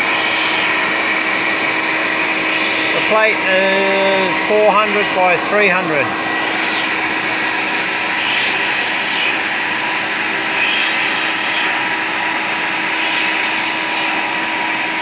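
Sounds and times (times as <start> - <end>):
dust collector running: 0.0 - 15.0
router spindle whine: 0.0 - 15.0
milling cutting hiss: 2.5 - 6.8.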